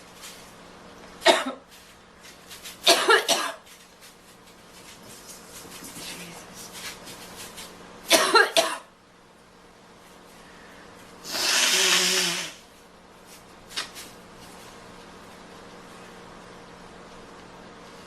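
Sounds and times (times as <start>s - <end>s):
woman coughing: 1.2s - 1.7s, 2.8s - 3.6s, 8.1s - 8.9s.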